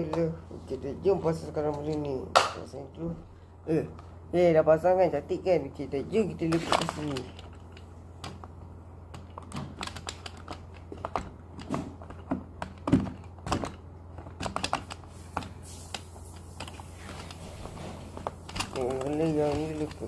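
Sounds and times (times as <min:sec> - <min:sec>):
steady low hum: 0:00.0 - 0:20.0
plastic parts clicking and knocking: 0:06.5 - 0:17.4, 0:18.1 - 0:20.0.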